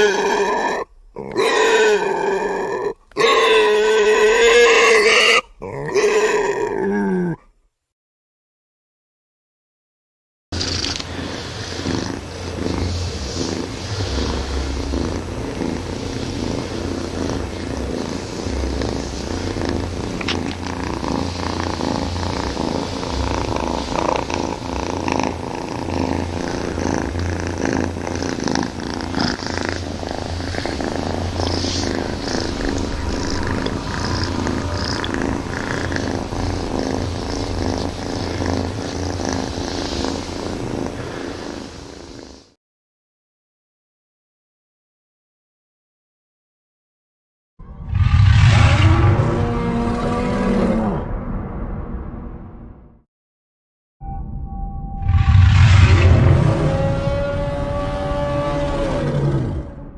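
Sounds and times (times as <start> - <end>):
low rough monster growl: 10.6 - 41.4, 47.6 - 52.4, 55.0 - 59.9.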